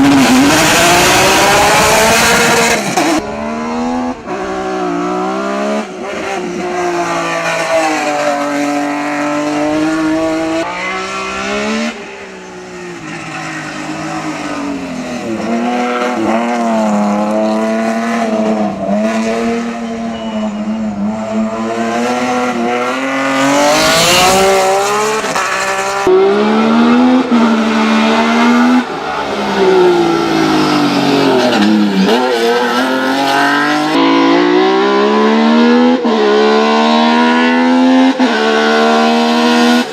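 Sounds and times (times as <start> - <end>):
racing car engine revving: 0.0 - 12.1, 13.8 - 39.9.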